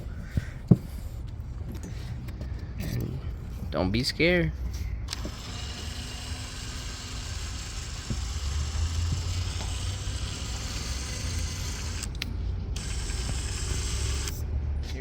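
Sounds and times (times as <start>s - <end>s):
power drill cutting plastic: 5.1s - 12.2s, 12.8s - 14.4s.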